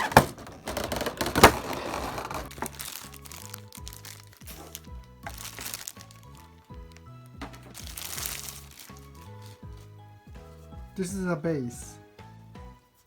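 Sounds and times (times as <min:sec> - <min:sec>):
plastic packaging crinkling: 0:00.0 - 0:09.8
background music: 0:00.0 - 0:13.0.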